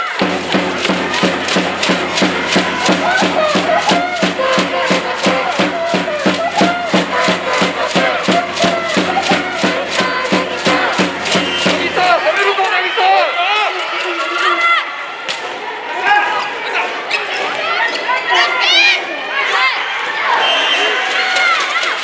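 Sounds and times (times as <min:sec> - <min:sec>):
fast drum beat: 0:00.0 - 0:12.4
crowd chanting: 0:00.0 - 0:12.9.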